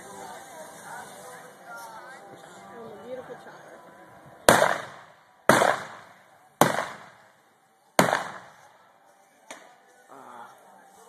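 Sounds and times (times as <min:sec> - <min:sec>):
gunshots: 0:04.5 - 0:07.2, 0:08.0 - 0:08.6.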